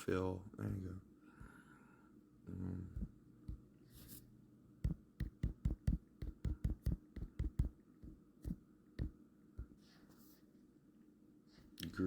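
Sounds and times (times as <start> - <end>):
fingertips tapping touchscreen: 4.8 - 9.7.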